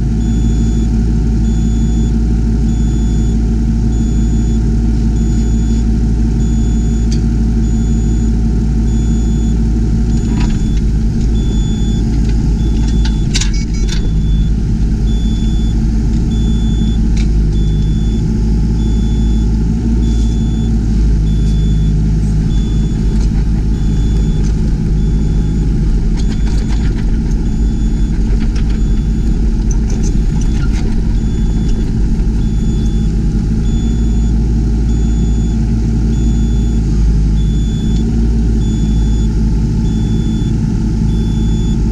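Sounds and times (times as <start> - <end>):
diesel excavator engine running: 0.0 - 41.9
high electronic beep: 8.9 - 36.8, 37.4 - 38.0, 39.9 - 41.9
metal knocks and clanks: 10.1 - 18.1, 22.4 - 34.3.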